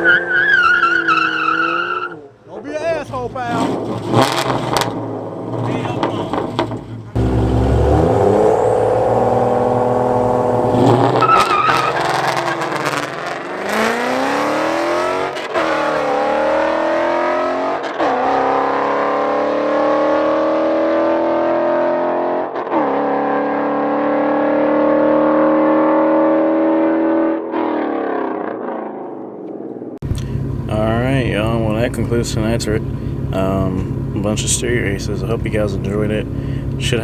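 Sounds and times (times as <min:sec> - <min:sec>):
car engine accelerating through gears: 0:03.5 - 0:29.0.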